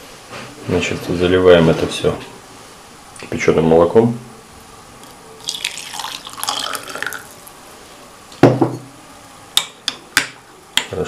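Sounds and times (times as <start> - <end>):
milk pouring into cup: 5.4 - 7.5.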